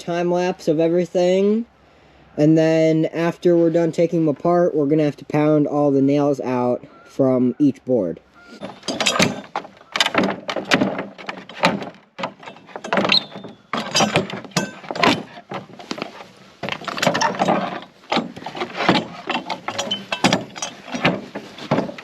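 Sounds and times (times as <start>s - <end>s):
pallet wood cracking and creaking: 8.6s - 22.0s.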